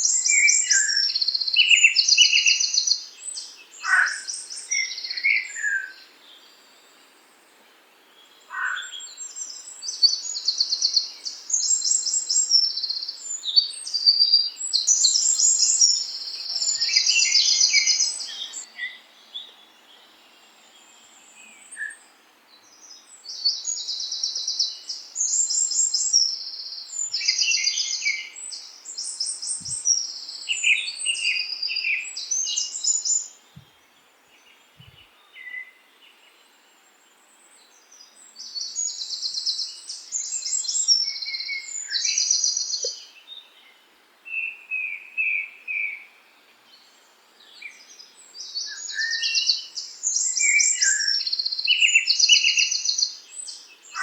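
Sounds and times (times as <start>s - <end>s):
faint steady hiss: 0.0s - 54.0s
songbirds trilling and chirping: 0.0s - 54.0s.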